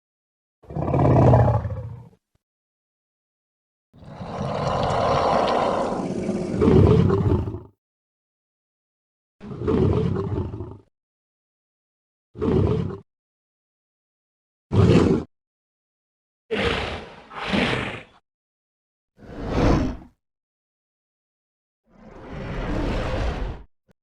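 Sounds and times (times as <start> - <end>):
creature roars: 4.0 - 7.6, 16.5 - 18.1.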